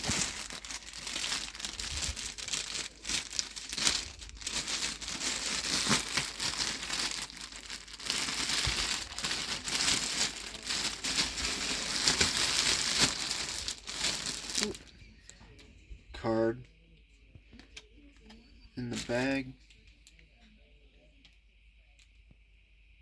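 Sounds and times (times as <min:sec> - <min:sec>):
plastic packaging crinkling: 0:00.0 - 0:14.9, 0:18.9 - 0:19.4.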